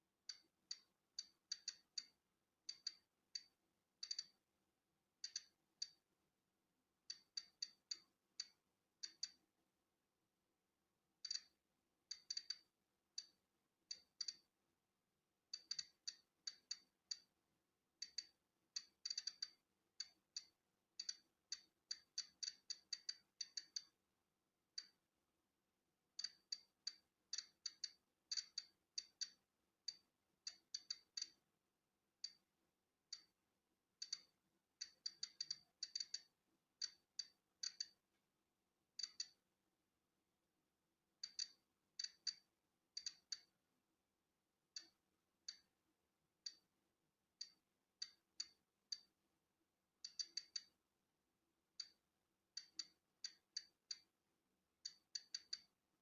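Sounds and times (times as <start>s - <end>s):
geiger counter clicking: 0.3s - 4.4s, 5.2s - 6.0s, 7.1s - 9.4s, 11.2s - 14.5s, 15.5s - 17.3s, 18.0s - 24.0s, 26.2s - 31.4s, 33.1s - 33.4s, 34.0s - 38.0s, 39.0s - 39.4s, 41.2s - 43.6s, 44.8s - 45.7s, 46.4s - 46.7s, 47.4s - 49.1s, 50.0s - 50.8s, 51.8s - 52.0s, 52.6s - 54.1s, 54.8s - 55.7s.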